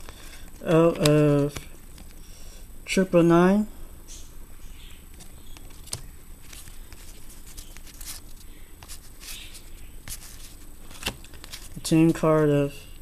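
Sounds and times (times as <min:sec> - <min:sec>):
trading cards clicking: 0:01.0 - 0:02.2.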